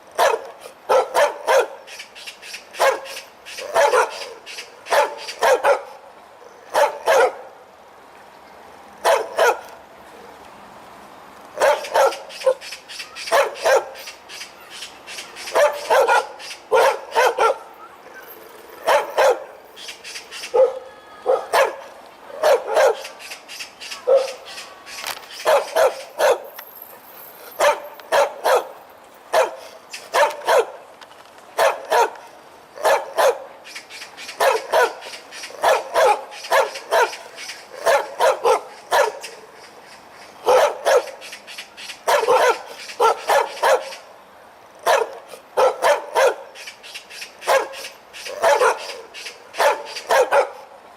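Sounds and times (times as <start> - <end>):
dog barking: 0.2 - 1.8, 2.8 - 4.3, 4.9 - 6.0, 6.7 - 7.5, 9.0 - 9.7, 11.6 - 12.6, 13.3 - 14.0, 15.5 - 17.7, 18.8 - 19.5, 20.5 - 23.1, 24.0 - 24.4, 25.4 - 26.5, 27.6 - 30.8, 31.6 - 32.2, 32.8 - 33.5, 34.4 - 37.2, 37.8 - 39.3, 40.4 - 41.2, 42.1 - 44.0, 44.8 - 46.5, 47.4 - 49.0, 49.6 - 50.6.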